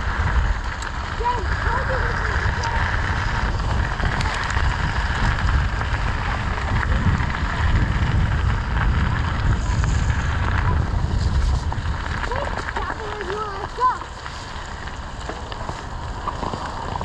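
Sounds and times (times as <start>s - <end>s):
tyre noise on dirt trail: 0.0s - 17.0s
wind rumbling on microphone: 0.0s - 17.0s.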